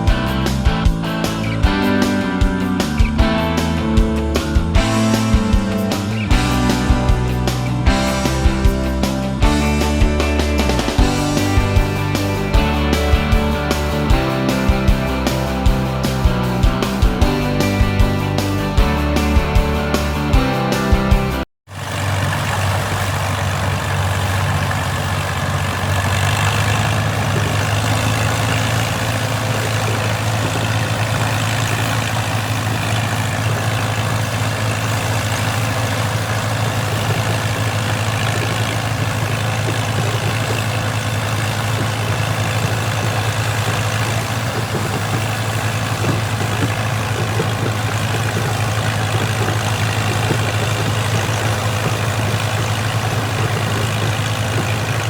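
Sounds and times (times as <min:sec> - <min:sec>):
machinery engine droning: 0:00.0 - 0:55.0.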